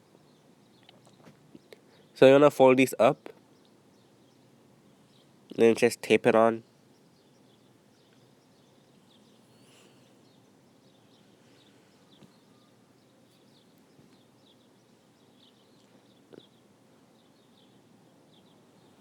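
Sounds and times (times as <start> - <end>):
faint room hiss: 0.0 - 19.0
high bird chirps: 12.1 - 12.8.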